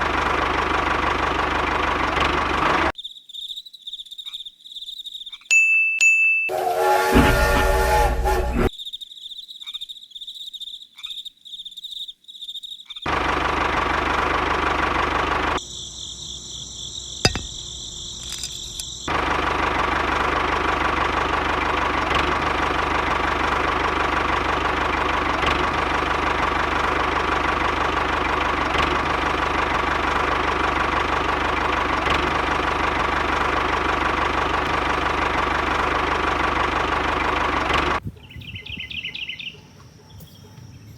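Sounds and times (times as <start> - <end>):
high pulsing chirp: 3.0 - 5.6.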